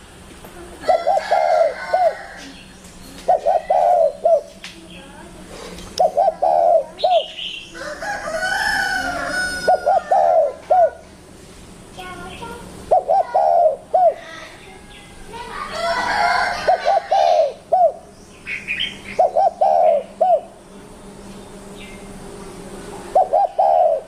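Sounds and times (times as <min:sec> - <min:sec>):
dove cooing: 0:00.7 - 0:04.6, 0:05.9 - 0:11.1, 0:12.3 - 0:20.6, 0:22.9 - 0:24.0.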